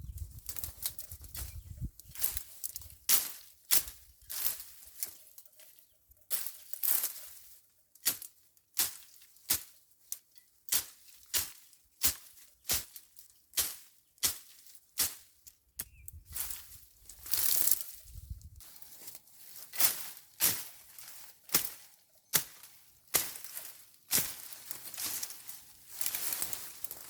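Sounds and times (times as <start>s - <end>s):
hand tool chopping weeds: 2.1s - 5.2s, 8.0s - 16.6s, 18.7s - 27.0s.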